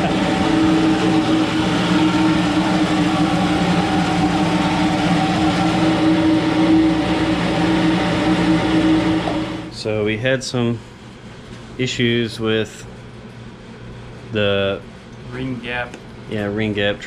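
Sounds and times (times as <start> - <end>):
grinder whining: 0.0 - 9.8.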